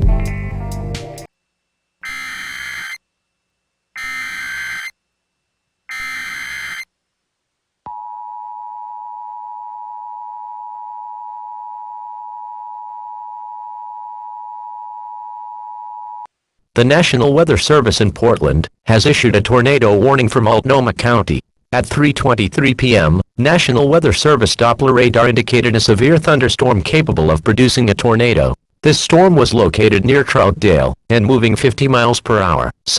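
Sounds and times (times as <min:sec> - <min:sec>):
data header bursts: 0:02.0 - 0:03.0, 0:04.0 - 0:04.9, 0:05.9 - 0:06.9
two-tone alert signal: 0:02.0 - 0:03.0, 0:04.0 - 0:04.9, 0:05.9 - 0:06.9.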